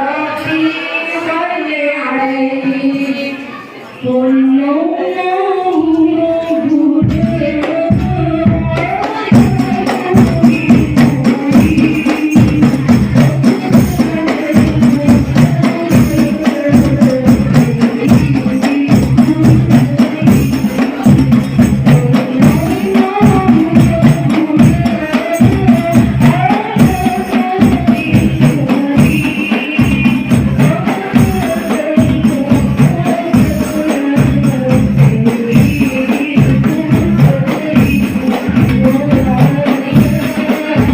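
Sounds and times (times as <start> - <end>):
voice singing devotional melody: 0.0 - 40.9
frame drums and bass drum: 6.9 - 40.9
tambourine jingles: 8.9 - 40.9.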